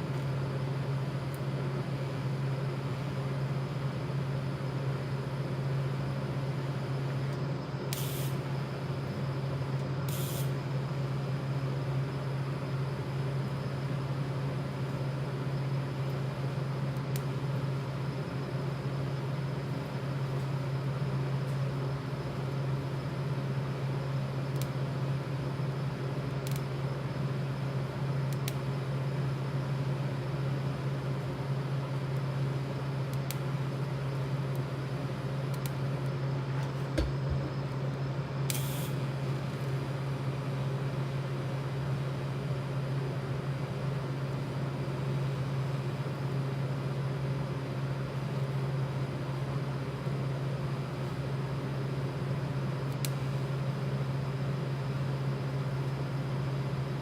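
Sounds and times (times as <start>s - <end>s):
low machine hum: 0.0s - 57.0s
brief sharp hiss: 10.1s - 10.5s.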